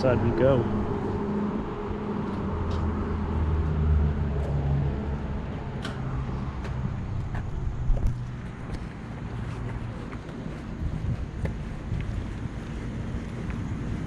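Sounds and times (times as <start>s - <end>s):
vehicle engine rumbling: 0.0s - 14.0s.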